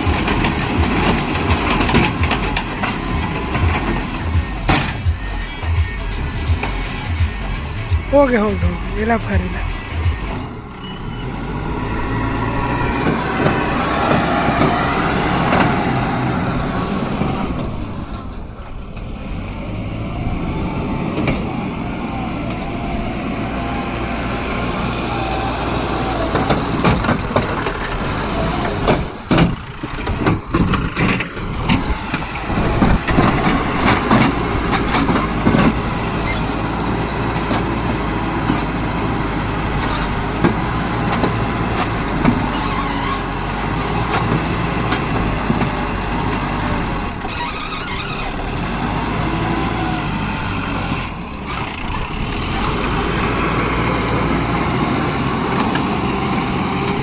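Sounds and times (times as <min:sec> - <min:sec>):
sharp knocks and clatters: 0:00.0 - 0:05.1, 0:28.7 - 0:35.8
heavy diesel engine running: 0:00.0 - 0:57.0.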